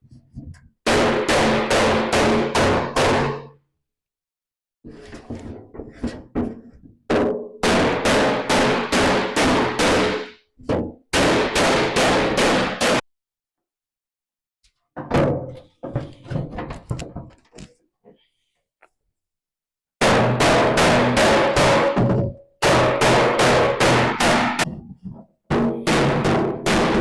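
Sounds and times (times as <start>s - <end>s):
hammer striking metal: 20.0s - 24.7s.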